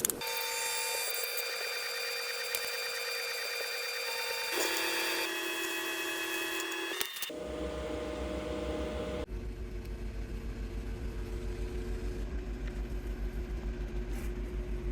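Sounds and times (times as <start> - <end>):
printer mechanical hum: 0.2 - 9.3.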